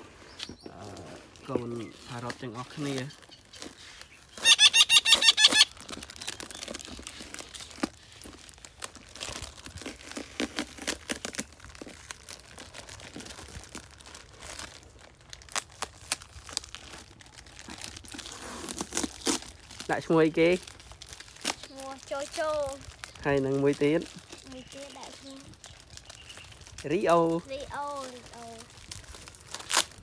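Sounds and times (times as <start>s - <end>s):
packing crinkling and rustling: 0.1s - 4.6s, 5.3s - 30.0s
baby parrot shrill calls: 4.3s - 5.8s.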